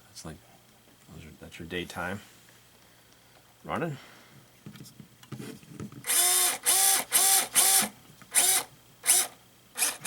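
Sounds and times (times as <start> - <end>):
small electric motor whirring: 6.0 - 10.0.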